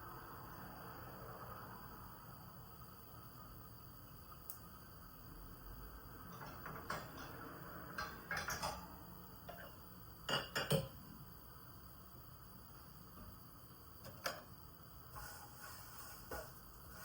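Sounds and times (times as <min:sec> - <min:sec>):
kitchenware clinks and knocks: 0:06.3 - 0:09.7, 0:10.3 - 0:11.0.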